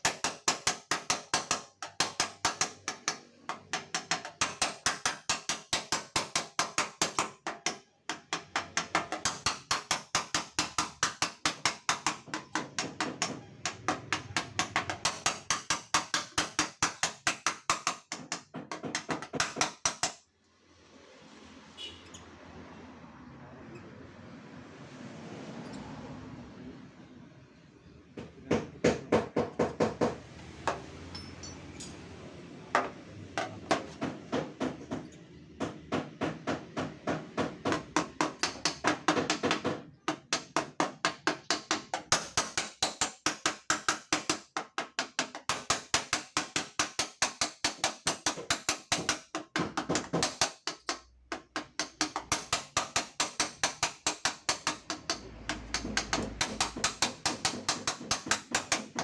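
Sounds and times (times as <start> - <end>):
hammer tapping on metal: 0.0 - 20.2, 32.8 - 59.0.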